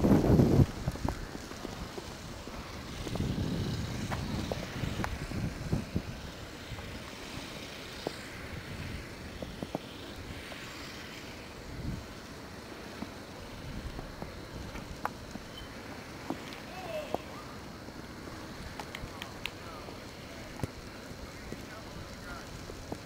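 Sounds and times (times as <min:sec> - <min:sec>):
strong wind on microphone: 0:00.0 - 0:07.5, 0:11.6 - 0:12.2.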